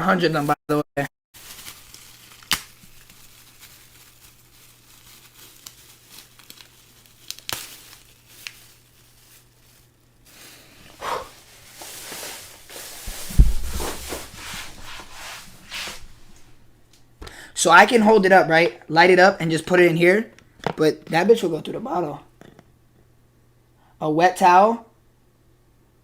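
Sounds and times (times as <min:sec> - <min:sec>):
packaging rustling and crinkling: 0:01.4 - 0:16.5
low thump: 0:13.1 - 0:14.4.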